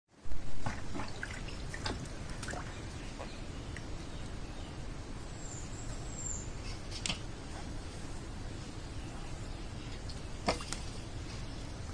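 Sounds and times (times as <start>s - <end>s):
water sloshing and trickling: 0.3s - 4.3s, 9.7s - 11.9s
small splashes and clicks: 0.6s - 3.9s, 10.1s - 11.0s
bird chirp: 0.9s - 6.8s.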